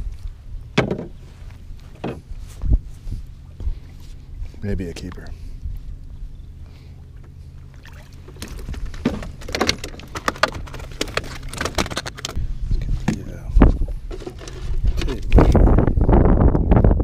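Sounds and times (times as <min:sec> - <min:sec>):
gear clicking and rattling: 0:08.2 - 0:12.4.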